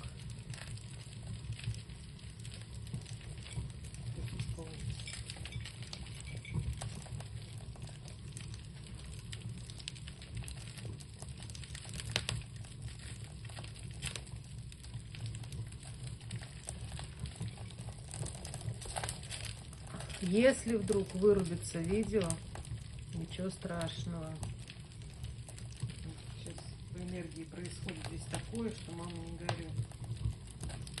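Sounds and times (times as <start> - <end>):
fire crackling and popping: 0.0 - 31.0
low steady rumble: 0.0 - 31.0.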